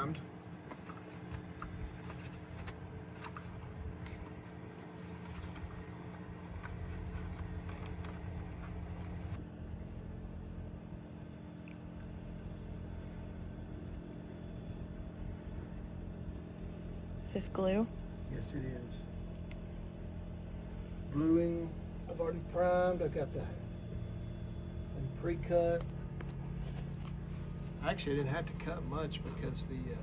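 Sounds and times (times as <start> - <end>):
low mechanical hum: 0.0 - 30.0.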